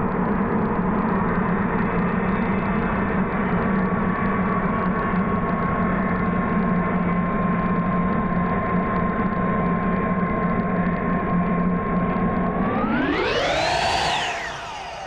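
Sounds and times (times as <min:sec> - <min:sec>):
mechanical hum with whine: 0:12.1 - 0:15.0.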